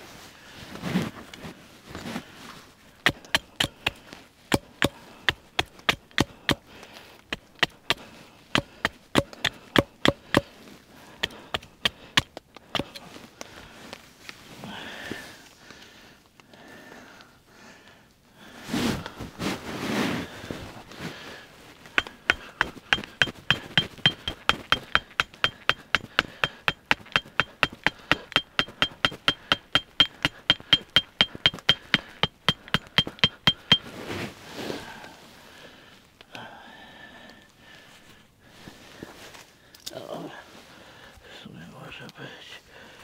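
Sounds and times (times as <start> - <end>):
hammering on metal: 3.1 - 3.9, 4.5 - 6.6, 8.6 - 10.5, 11.2 - 13.0, 22.0 - 33.9.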